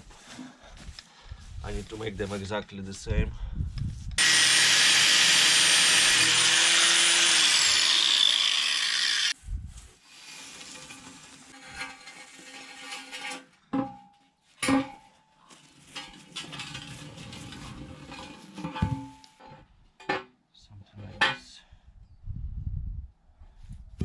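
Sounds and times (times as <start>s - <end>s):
angle grinder cutting steel: 4.2s - 9.4s.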